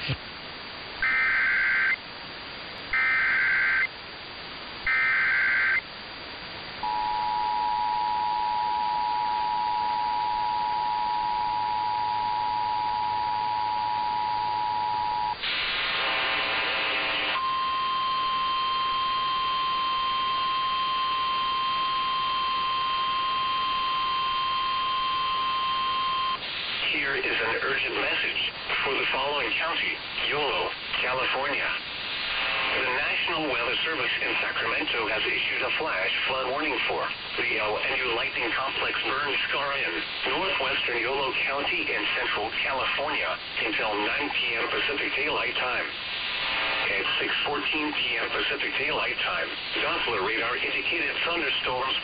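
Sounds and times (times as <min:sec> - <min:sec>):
short screeching digital bursts: 0:01.0 - 0:02.0, 0:03.0 - 0:03.9, 0:04.9 - 0:05.8
steady single-pitch alarm tone: 0:01.0 - 0:02.1, 0:02.9 - 0:04.1, 0:04.8 - 0:06.0, 0:06.8 - 0:15.4, 0:17.4 - 0:26.4
two-tone attention signal: 0:06.8 - 0:15.4, 0:17.4 - 0:26.4.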